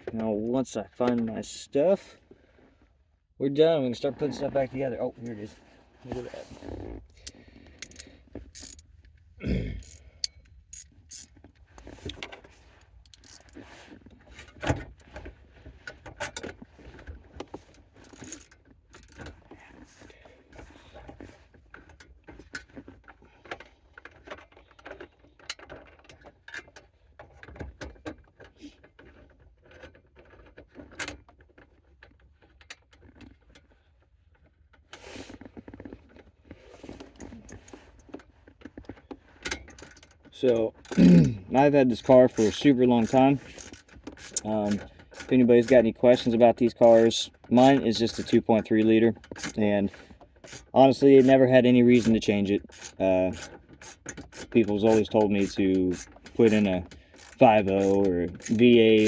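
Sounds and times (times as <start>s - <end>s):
hand tools clinking and knocking: 50.4s - 59.0s.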